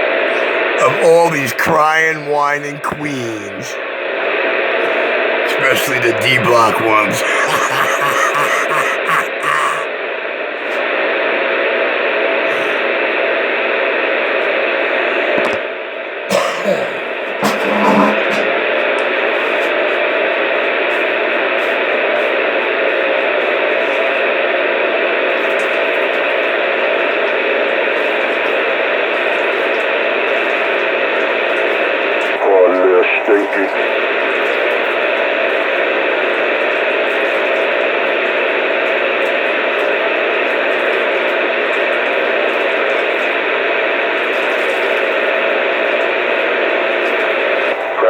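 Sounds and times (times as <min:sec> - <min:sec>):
radio static hiss: 0:00.8 - 0:03.8, 0:05.5 - 0:07.2, 0:32.4 - 0:34.2.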